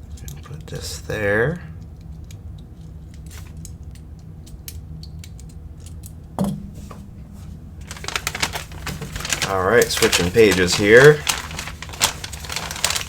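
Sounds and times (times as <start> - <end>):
rustling: 6.7 - 13.0.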